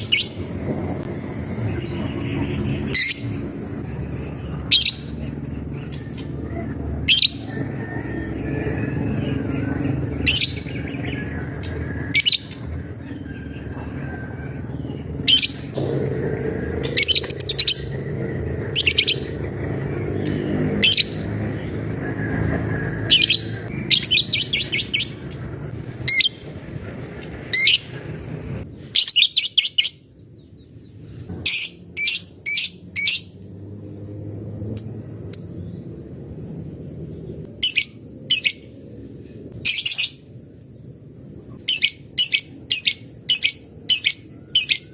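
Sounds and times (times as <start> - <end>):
bird high chirping calls: 0.0 - 26.7, 27.5 - 28.1, 28.9 - 30.1, 31.3 - 33.3, 37.5 - 38.8, 39.6 - 40.3, 41.6 - 44.9.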